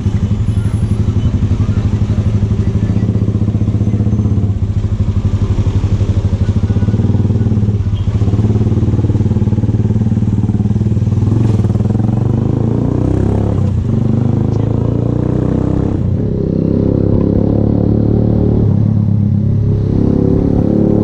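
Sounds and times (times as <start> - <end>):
motorcycle engine pulsing exhaust: 0.0 - 21.0.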